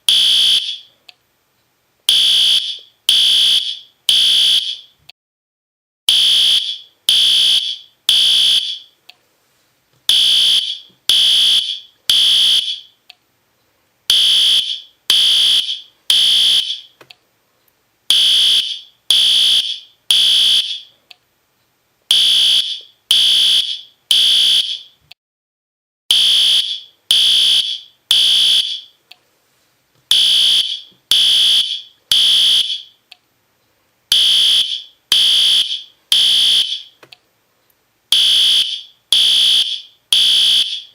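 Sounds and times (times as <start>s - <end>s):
fire alarm horn blasts: 0.1s - 0.9s, 2.1s - 4.9s, 6.1s - 9.0s, 10.1s - 13.0s, 14.1s - 16.9s, 18.1s - 20.9s, 22.1s - 25.0s, 26.1s - 29.0s, 30.1s - 33.0s, 34.1s - 37.0s, 38.1s - 40.9s.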